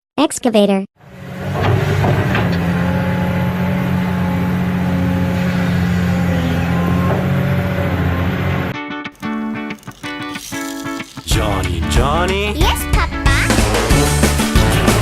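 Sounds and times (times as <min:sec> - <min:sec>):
toy motor hum: 0:09.2 - 0:11.8.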